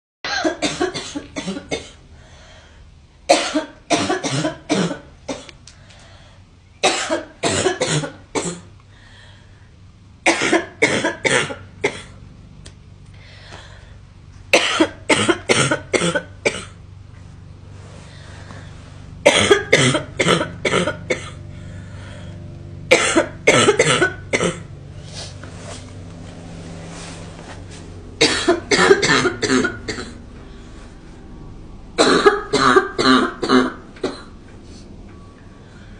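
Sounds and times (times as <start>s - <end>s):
girl coughing: 0.3s - 2.0s, 3.3s - 5.5s, 6.8s - 8.7s, 10.3s - 12.1s, 14.5s - 16.8s, 19.2s - 21.4s, 22.9s - 24.7s, 28.2s - 30.2s, 32.0s - 34.4s.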